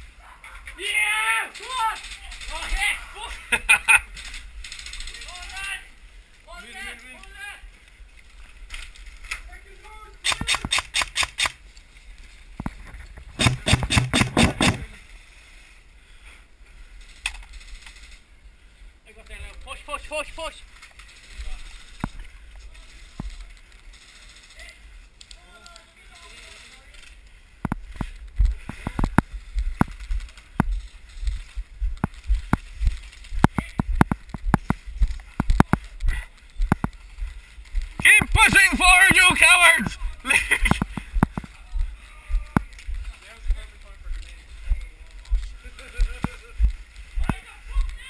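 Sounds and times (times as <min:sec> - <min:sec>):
airsoft gun rapid shots: 0:10.2 - 0:11.6, 0:13.4 - 0:15.0.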